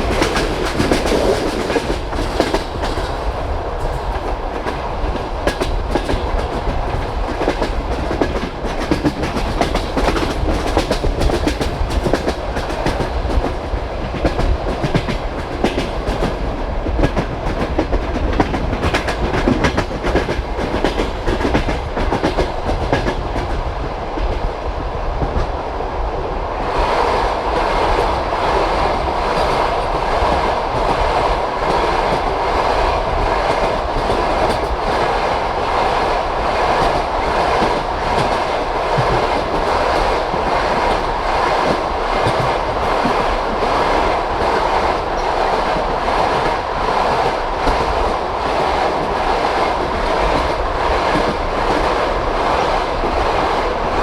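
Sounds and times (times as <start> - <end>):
train wheels clattering over rail joints: 0.0 - 24.4
train carriage rumble: 0.0 - 54.0.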